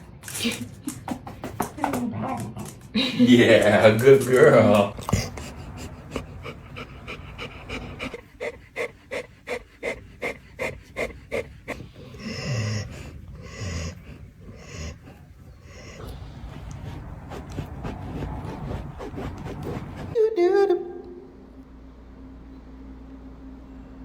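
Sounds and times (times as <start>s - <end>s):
dog panting rapidly: 4.9s - 20.2s
short low dog vocal sounds: 4.9s - 20.2s.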